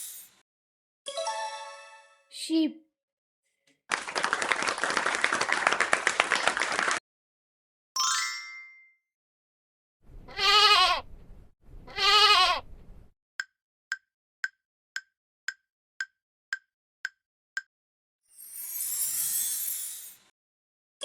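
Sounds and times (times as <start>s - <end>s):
sheep bleating: 10.3s - 11.0s, 11.9s - 12.6s.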